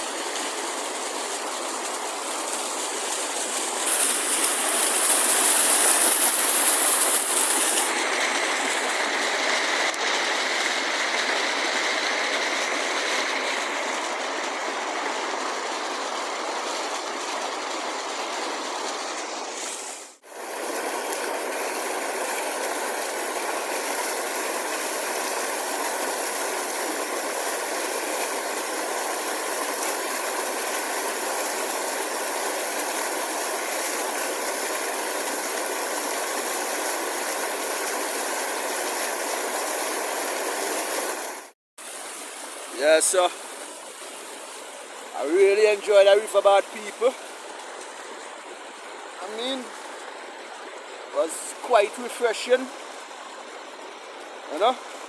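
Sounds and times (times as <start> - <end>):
river water rushing over rocks: 2.9 - 14.3.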